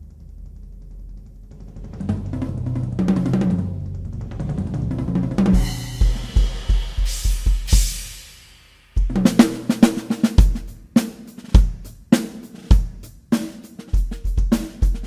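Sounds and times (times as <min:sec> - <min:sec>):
tom and snare drum fill: 0:00.0 - 0:15.0
bass drum kicks: 0:05.4 - 0:08.0
crash cymbal: 0:05.6 - 0:09.0.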